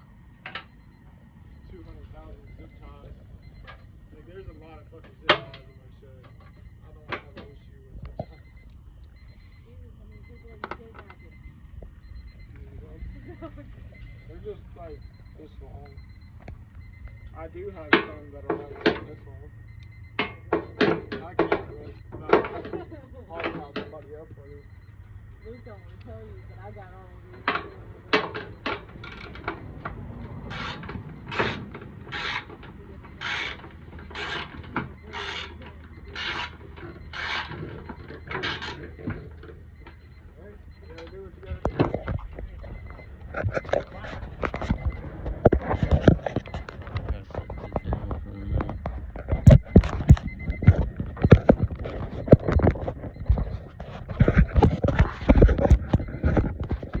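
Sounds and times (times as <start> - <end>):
sharp knocks and clicks: 13.9 - 24.0, 27.4 - 57.0.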